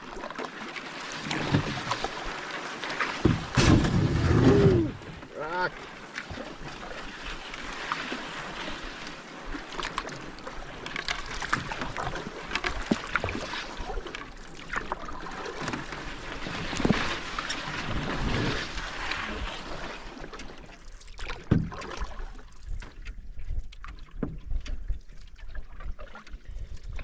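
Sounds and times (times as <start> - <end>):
paddle splashing and dripping: 0.0 - 27.0
water washing: 0.3 - 8.2.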